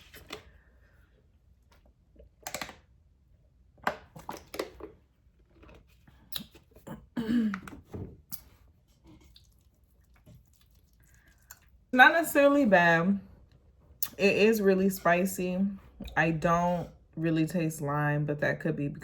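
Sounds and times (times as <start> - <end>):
person chewing noodles: 5.4 - 7.2, 8.3 - 11.9
wet mouth smacks and clicks: 6.3 - 6.6.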